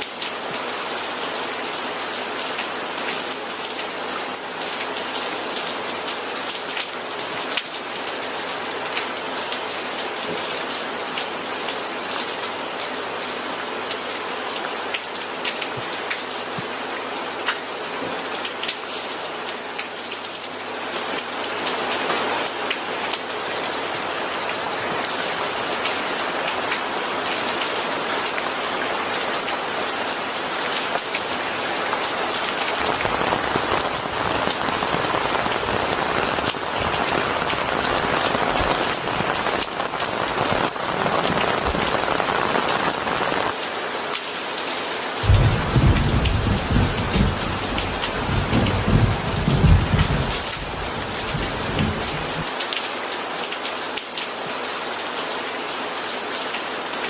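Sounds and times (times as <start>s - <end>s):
rain on a hard surface: 0.0s - 57.0s
low rumble of thunder: 45.2s - 52.5s.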